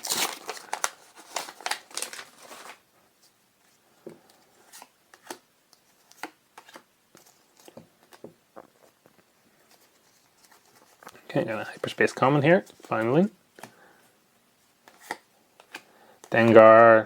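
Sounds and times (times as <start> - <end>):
wrapper rustling: 0.0 - 2.9
trading cards tapping and rustling: 4.1 - 13.8, 14.8 - 16.9.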